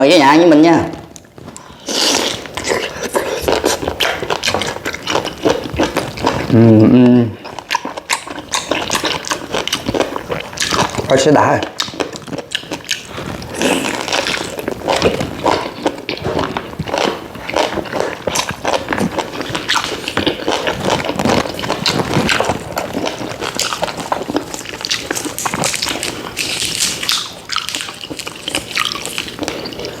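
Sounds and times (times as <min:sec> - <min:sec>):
person biting and chewing meat: 0:01.0 - 0:30.0
mouth clicks and smacks: 0:01.1 - 0:30.0.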